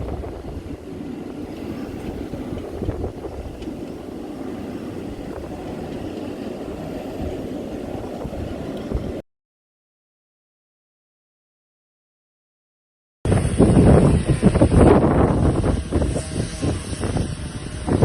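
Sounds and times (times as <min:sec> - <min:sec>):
strong wind buffeting microphone: 0:00.0 - 0:09.2, 0:13.3 - 0:18.0.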